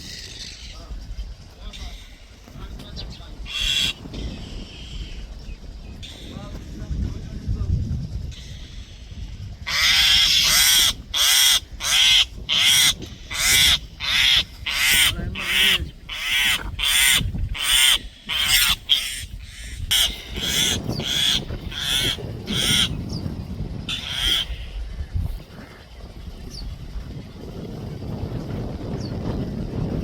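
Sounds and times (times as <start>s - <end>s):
bird harsh rasping squawks: 0.0s - 0.8s, 3.4s - 5.3s, 8.3s - 23.2s, 23.9s - 24.9s.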